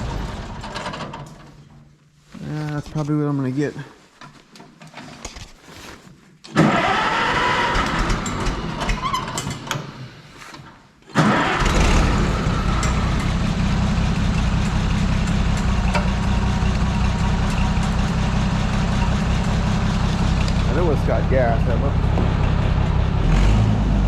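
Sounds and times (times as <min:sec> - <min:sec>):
tractor engine running: 0:00.0 - 0:01.5, 0:06.6 - 0:09.8, 0:11.2 - 0:24.0
tractor engine cranking on starter: 0:00.0 - 0:01.8, 0:06.5 - 0:21.0.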